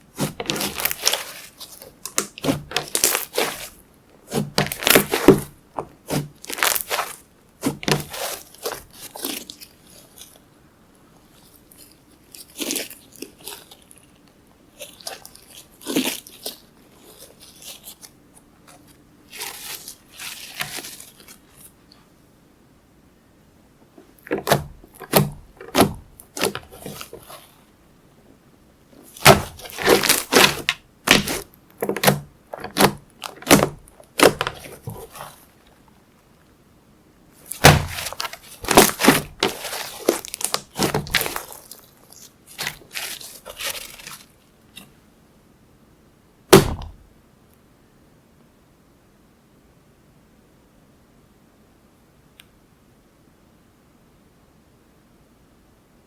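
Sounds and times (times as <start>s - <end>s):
slime squelching and crackling: 0.1s - 10.4s, 11.2s - 21.7s, 24.0s - 27.6s, 29.0s - 35.8s, 37.4s - 44.4s
sharp pop: 46.5s - 47.0s.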